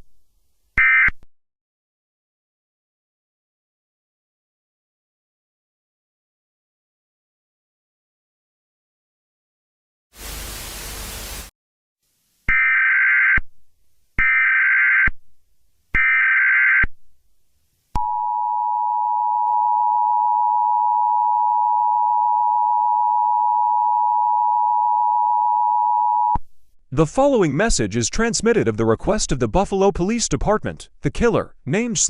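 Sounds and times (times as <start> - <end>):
static hiss: 10.2 - 11.5.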